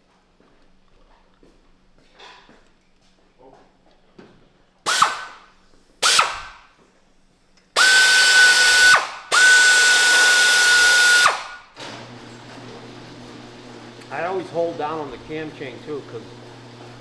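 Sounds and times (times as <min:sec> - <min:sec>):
power tool whining: 0:04.9 - 0:05.4, 0:06.0 - 0:06.6, 0:07.8 - 0:17.0.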